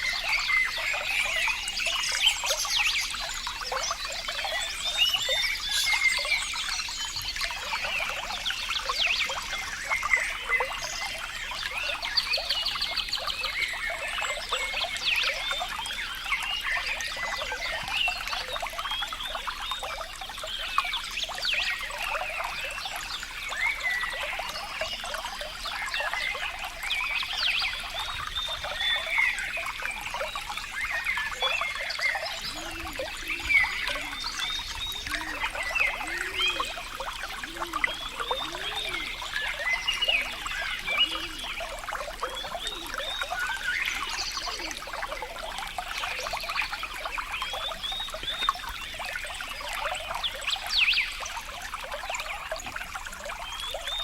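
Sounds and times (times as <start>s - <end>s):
water trickling and gurgling: 0.0s - 54.0s.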